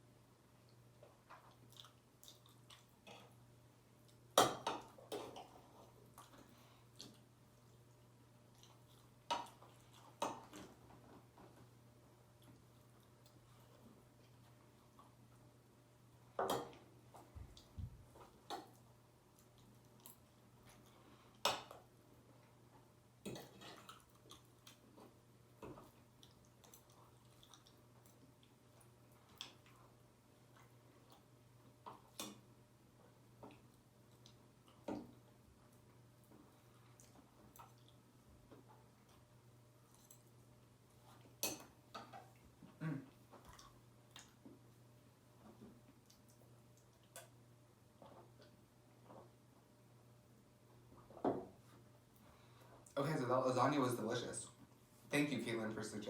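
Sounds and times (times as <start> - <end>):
faint steady hum: 0.0 - 56.0
person chewing food: 0.7 - 4.3, 5.0 - 10.7, 23.3 - 41.4.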